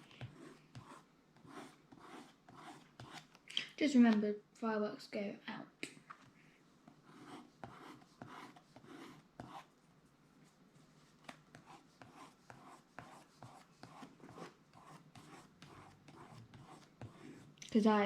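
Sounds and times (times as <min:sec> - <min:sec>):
paint brushed onto paper: 0:00.0 - 0:03.3.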